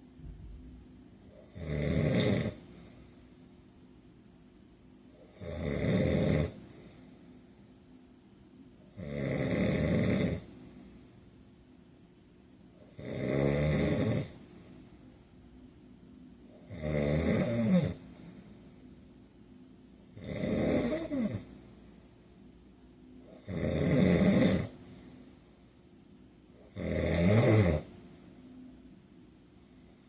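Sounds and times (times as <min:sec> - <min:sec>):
man snoring: 0:01.3 - 0:02.6, 0:05.2 - 0:06.6, 0:08.9 - 0:10.5, 0:12.8 - 0:14.4, 0:16.6 - 0:18.0, 0:20.2 - 0:21.5, 0:23.3 - 0:24.8, 0:26.6 - 0:27.9.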